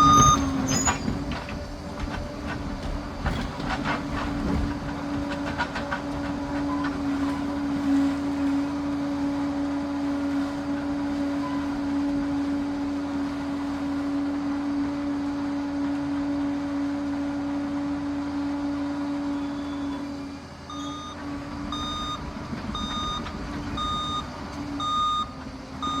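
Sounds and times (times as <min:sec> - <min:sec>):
reversing alarm beeping: 0:00.0 - 0:01.2, 0:19.5 - 0:26.0
crawler dozer engine drone: 0:00.0 - 0:26.0.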